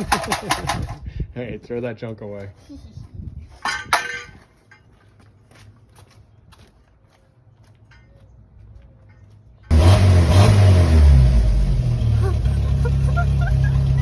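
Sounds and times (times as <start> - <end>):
car engine revving and running: 9.7 - 14.0.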